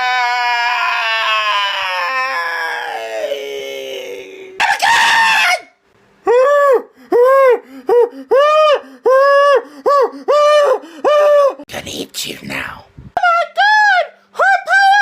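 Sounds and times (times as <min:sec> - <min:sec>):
man making spooky moans and screams: 0:00.0 - 0:11.7.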